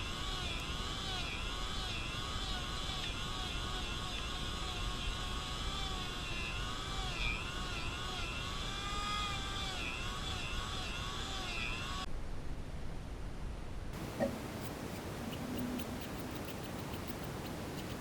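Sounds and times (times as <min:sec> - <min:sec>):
electric power tool whining: 0:00.0 - 0:12.1.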